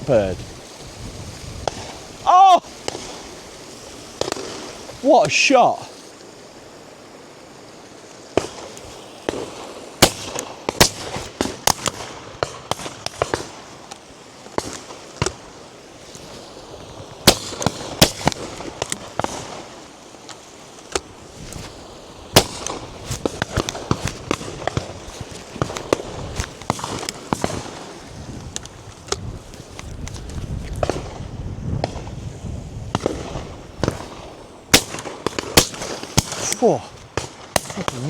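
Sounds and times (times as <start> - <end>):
shotguns firing: 8.4 - 13.7, 17.2 - 19.7, 22.3 - 28.0, 32.9 - 38.0.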